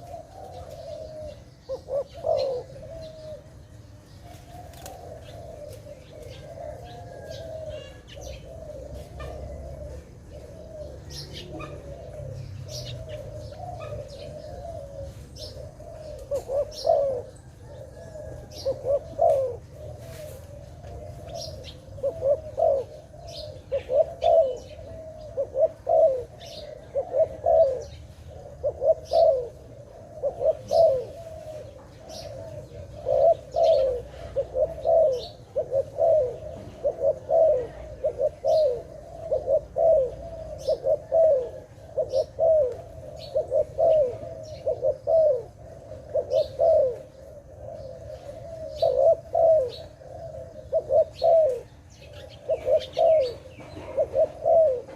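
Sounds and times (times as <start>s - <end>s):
dove cooing: 0.0s - 54.9s
small birds chirping: 0.0s - 54.9s.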